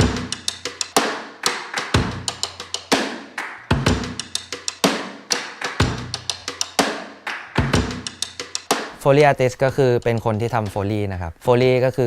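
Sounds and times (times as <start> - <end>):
drum kit beat: 0.0 - 9.0.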